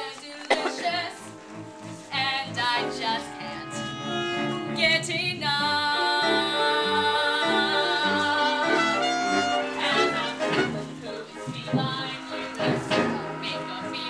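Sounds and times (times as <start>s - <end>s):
instrumental accompaniment: 0.4s - 14.0s
person singing: 2.6s - 14.0s.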